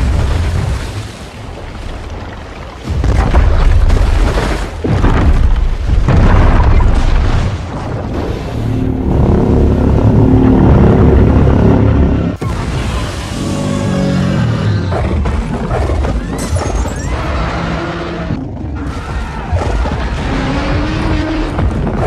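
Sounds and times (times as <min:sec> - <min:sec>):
deep rumbling booms: 0:02.9 - 0:16.2.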